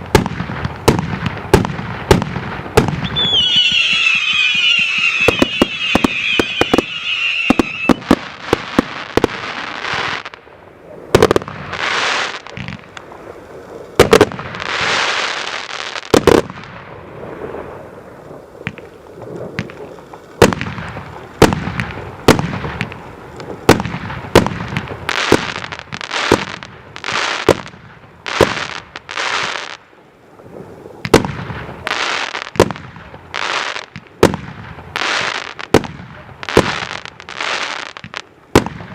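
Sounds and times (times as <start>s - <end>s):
firework bangs: 0.0s - 10.3s, 11.1s - 13.0s, 14.0s - 17.9s, 18.6s - 29.8s, 31.0s - 38.9s
hissing crackle: 0.0s - 38.9s
firework whistles: 2.8s - 10.2s.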